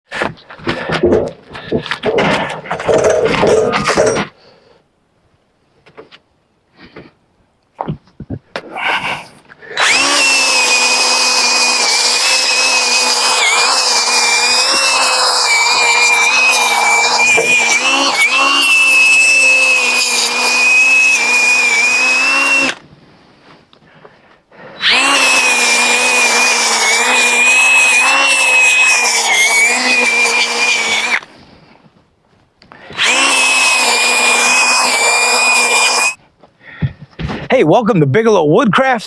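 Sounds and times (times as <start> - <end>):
band sawmill whining: 9.7 - 22.8, 24.6 - 31.7, 32.8 - 36.2.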